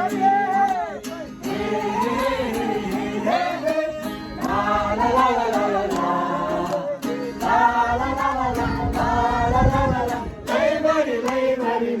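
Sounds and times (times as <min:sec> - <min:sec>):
group of people singing: 0:00.0 - 0:12.0.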